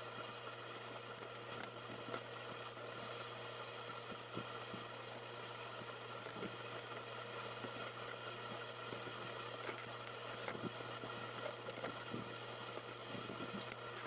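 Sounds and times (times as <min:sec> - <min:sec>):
low hum and hiss: 0:00.0 - 0:14.0
paper scratching and tapping: 0:08.9 - 0:14.0.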